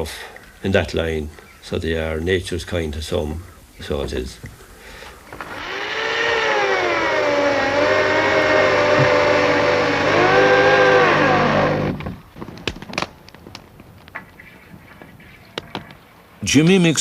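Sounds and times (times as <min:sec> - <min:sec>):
woodworking machine running: 0:05.4 - 0:12.2.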